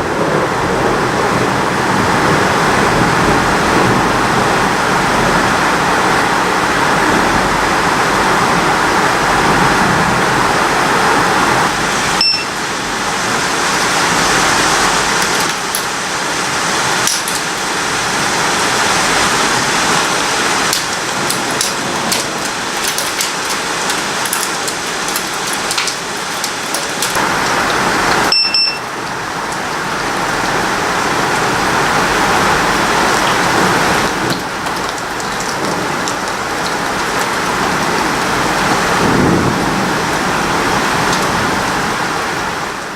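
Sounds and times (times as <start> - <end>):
heavy rain pouring: 0.0 - 42.9
short beeps: 12.2 - 12.5, 28.3 - 28.8
raindrops ticking nearby: 13.8 - 17.8, 19.6 - 41.8.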